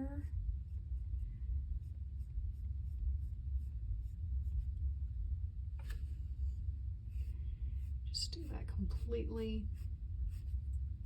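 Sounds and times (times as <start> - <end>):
steady low hum: 0.0 - 11.0
pencil scratching on paper: 0.6 - 4.8, 7.1 - 10.8.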